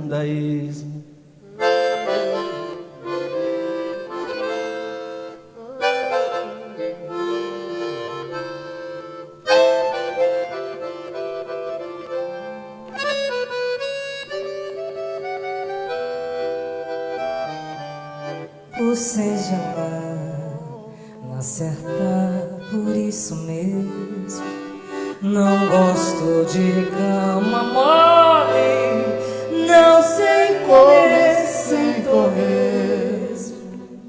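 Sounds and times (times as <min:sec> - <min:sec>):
band playing chords and melody: 0:01.5 - 0:18.5.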